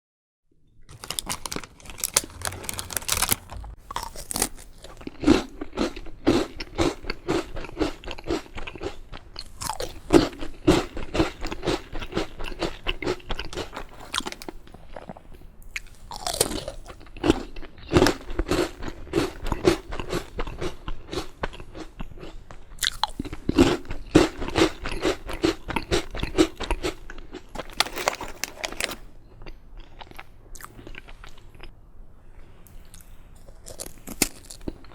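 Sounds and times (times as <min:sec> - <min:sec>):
biscuit bites cracking: 0:00.9 - 0:06.4
crunchy chewing: 0:00.9 - 0:31.7, 0:32.9 - 0:34.9.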